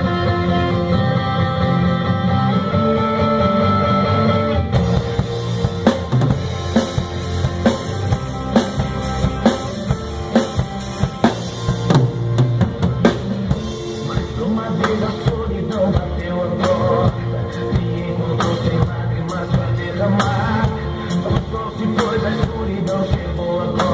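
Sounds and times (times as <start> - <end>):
band backing track: 0.0 - 23.9
drum kit kick and snare: 4.7 - 19.0.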